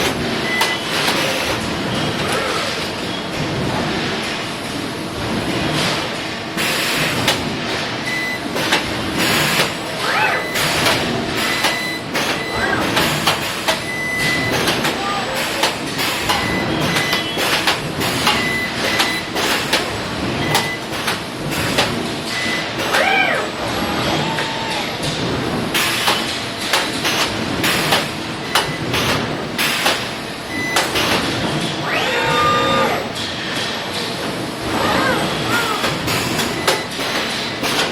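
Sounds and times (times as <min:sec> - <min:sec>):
steady machine noise: 0:00.0 - 0:37.9.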